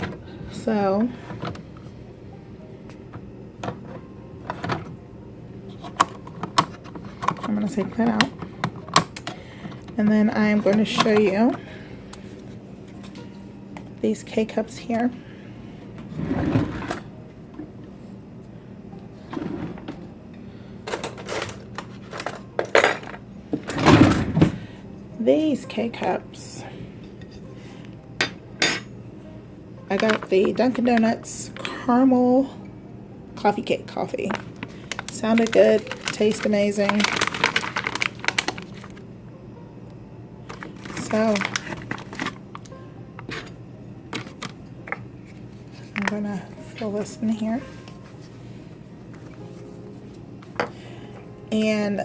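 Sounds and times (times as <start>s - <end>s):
low steady hum: 0.0s - 52.0s
plastic coffee pods clattering: 29.9s - 31.8s, 34.1s - 39.0s, 40.5s - 43.4s.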